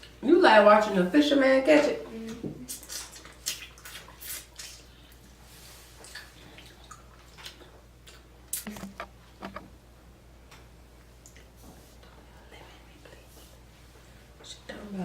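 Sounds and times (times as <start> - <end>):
wet mouth sounds eating: 2.6 - 5.2, 6.0 - 9.1.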